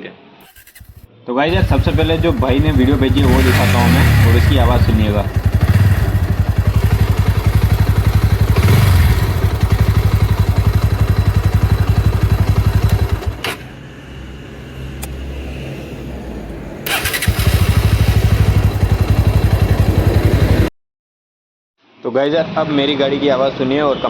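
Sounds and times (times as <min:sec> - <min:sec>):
motorcycle engine running: 0:00.5 - 0:13.7, 0:16.9 - 0:20.7.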